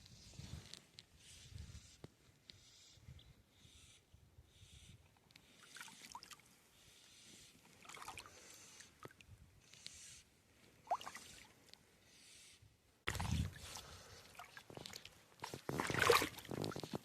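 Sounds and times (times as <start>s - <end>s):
brook water sloshing and trickling: 5.6s - 6.6s, 7.6s - 9.3s, 10.8s - 11.6s, 13.1s - 17.0s.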